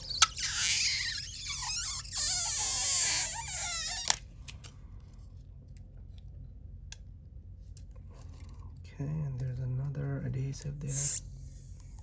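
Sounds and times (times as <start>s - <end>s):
adhesive strip peeling squeak: 0.0s - 4.2s.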